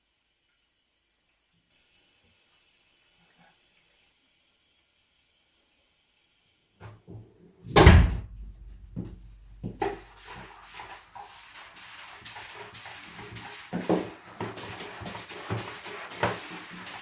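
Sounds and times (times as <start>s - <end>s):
loud thump: 7.8s - 9.2s.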